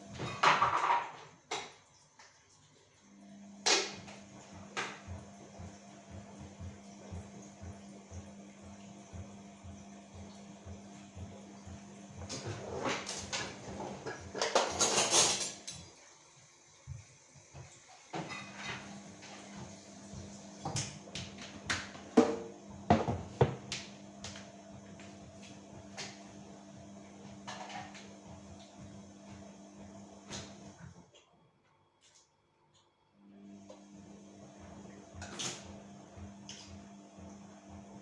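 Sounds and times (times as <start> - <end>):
dishes knocking and clinking: 0.2 - 1.8, 12.3 - 15.8, 18.2 - 18.9, 20.6 - 24.4.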